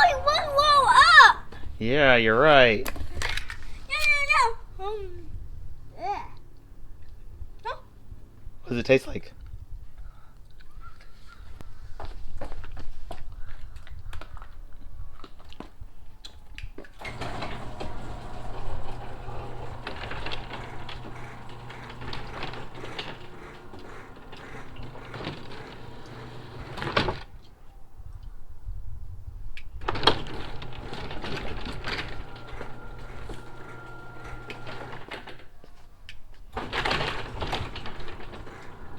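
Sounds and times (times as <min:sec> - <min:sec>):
garage door opener droning: 0:00.0 - 0:01.3, 0:17.0 - 0:27.4, 0:29.8 - 0:35.5, 0:36.5 - 0:38.9
garage door clunk: 0:17.0 - 0:27.4, 0:29.8 - 0:35.4, 0:36.6 - 0:38.9
garage door opener click: 0:17.0 - 0:27.4, 0:29.8 - 0:35.5, 0:36.5 - 0:38.9.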